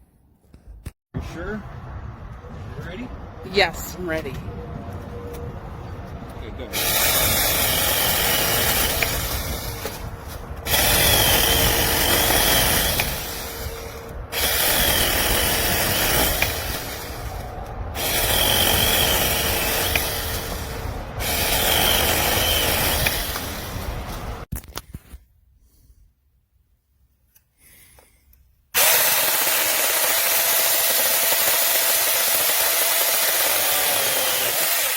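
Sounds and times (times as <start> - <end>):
motor whine: 6.7 - 24.4
mini chainsaw cutting wood: 6.7 - 24.5, 28.8 - 34.9.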